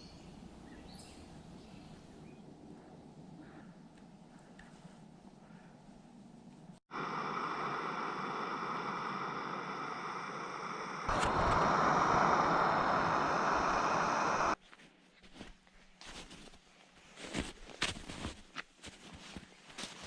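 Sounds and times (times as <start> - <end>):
gas burner hissing: 6.9 - 14.6
burner click: 10.9 - 14.6.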